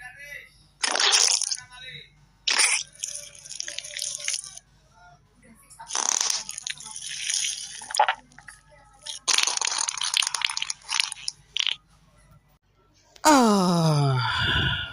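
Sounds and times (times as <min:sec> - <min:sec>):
person groaning: 0:13.2 - 0:14.9.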